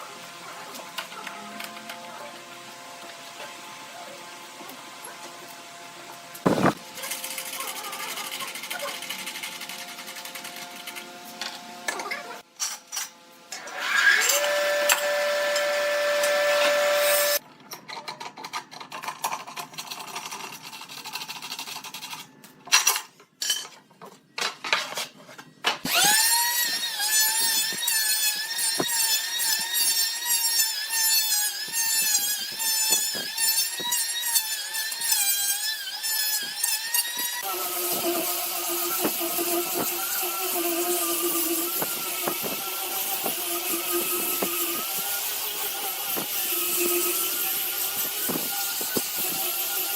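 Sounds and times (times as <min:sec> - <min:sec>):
high-pitched motor running: 0:06.4 - 0:06.8
power tool motor running: 0:06.4 - 0:06.8, 0:25.9 - 0:49.9
scraping and knocking on wood: 0:06.4 - 0:06.8.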